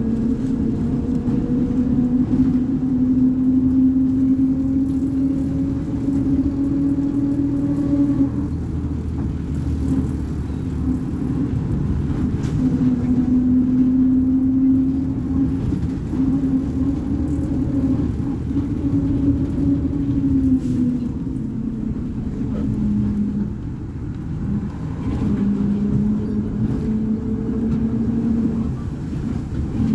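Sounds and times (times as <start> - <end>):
bus diesel engine running: 0.0 - 29.9.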